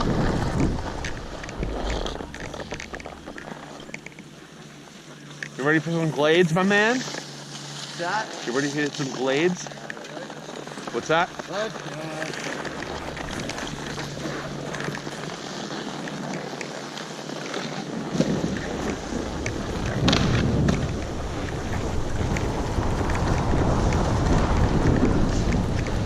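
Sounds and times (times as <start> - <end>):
wind on microphone: 0.0 - 3.2, 18.2 - 26.0
skis scraping over snow: 0.0 - 26.0.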